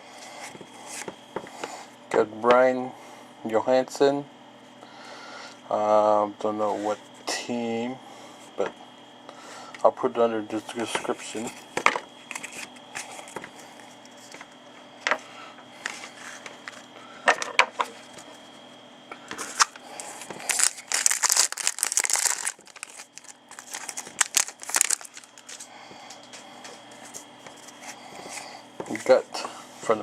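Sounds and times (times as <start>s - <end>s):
wrapper crinkling and tearing: 19.6s - 25.6s.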